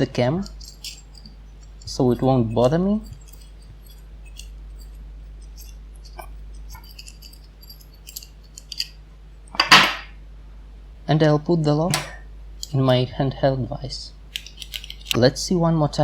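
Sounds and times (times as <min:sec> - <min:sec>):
small metal clicks and clinks: 0:00.4 - 0:09.0.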